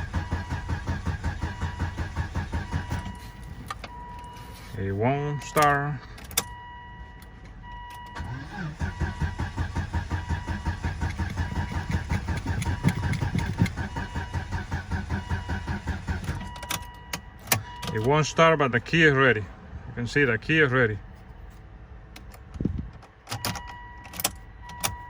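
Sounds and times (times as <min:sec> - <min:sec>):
car engine cranking: 0:00.0 - 0:04.3, 0:07.9 - 0:18.3.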